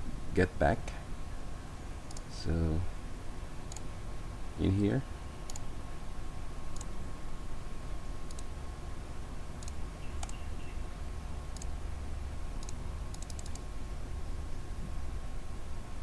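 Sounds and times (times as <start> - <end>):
computer mouse clicking: 2.1 - 2.3, 5.5 - 5.7, 8.3 - 8.5, 9.6 - 10.4, 11.5 - 11.7, 12.6 - 13.6.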